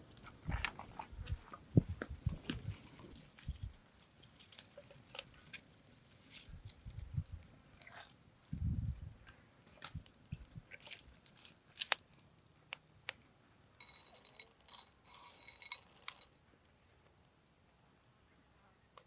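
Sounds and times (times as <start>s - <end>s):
food and utensils being handled: 0.3s - 8.2s, 13.8s - 16.4s.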